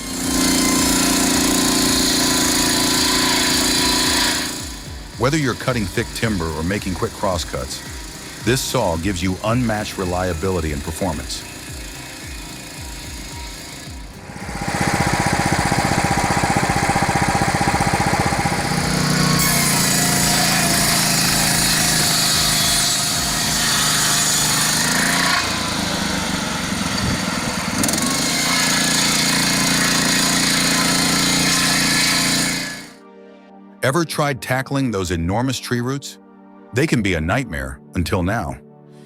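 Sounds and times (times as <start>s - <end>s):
circular saw engine running: 0.0s - 33.0s
saw blade cutting timber: 0.0s - 33.0s.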